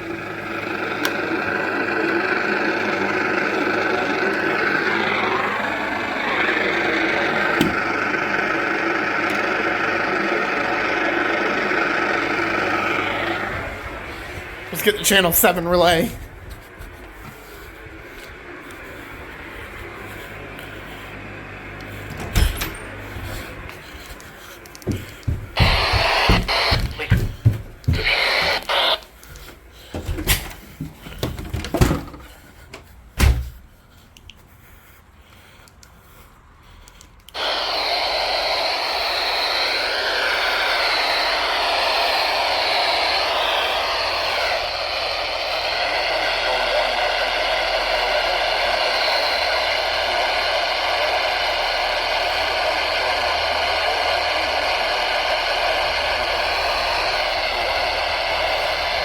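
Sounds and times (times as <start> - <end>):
radio static: 0.1 - 17.0, 24.8 - 29.5, 37.4 - 59.0.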